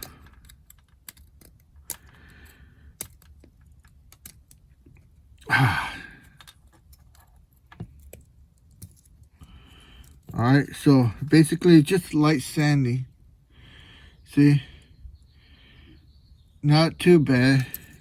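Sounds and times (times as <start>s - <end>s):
breathy sigh: 5.4s - 6.4s.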